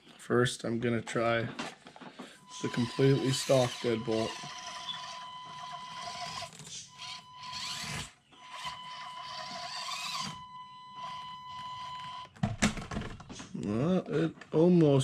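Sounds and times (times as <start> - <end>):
small electric motor whining: 2.5 - 11.2.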